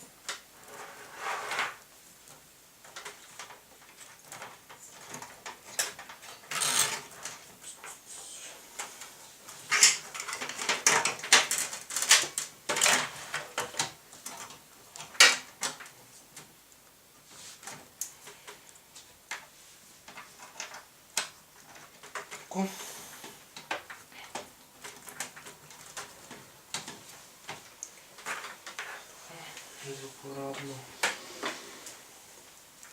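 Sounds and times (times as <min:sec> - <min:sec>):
cable rustling scrape: 0:00.5 - 0:01.8, 0:28.2 - 0:32.5.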